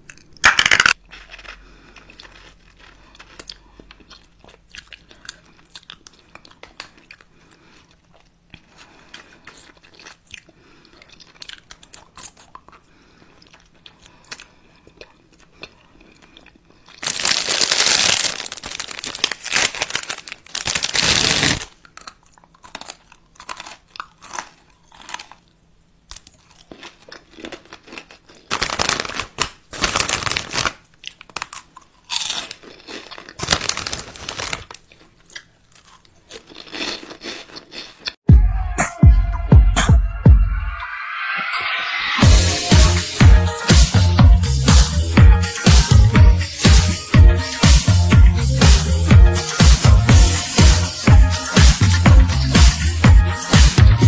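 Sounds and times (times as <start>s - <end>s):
mouth crunching and chewing: 0.0s - 29.1s, 31.0s - 38.2s.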